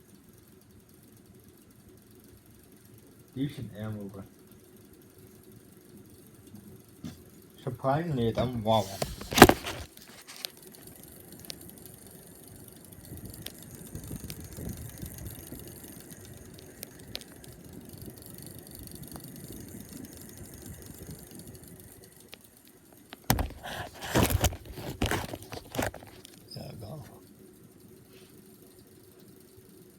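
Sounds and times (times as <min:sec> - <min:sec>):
faint ticks: 0:00.0 - 0:07.7, 0:10.2 - 0:23.3, 0:26.2 - 0:29.9
ceiling fan whirring: 0:00.0 - 0:29.9
rustling: 0:08.4 - 0:11.0, 0:23.0 - 0:27.1.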